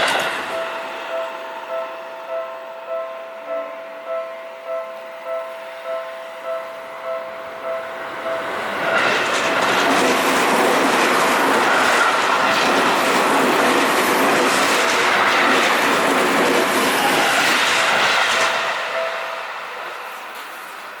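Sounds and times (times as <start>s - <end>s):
train wheels clattering over rails: 0.0s - 0.6s, 8.5s - 19.1s
level-crossing warning bell: 0.0s - 21.0s.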